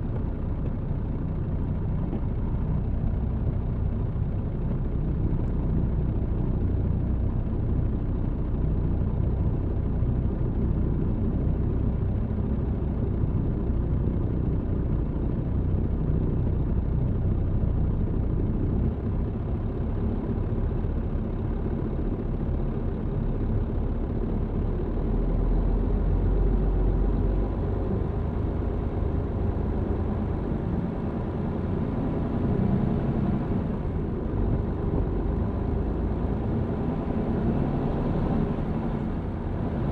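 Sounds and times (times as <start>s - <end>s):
road rumble: 0.0s - 39.9s
truck engine drone: 9.2s - 39.9s.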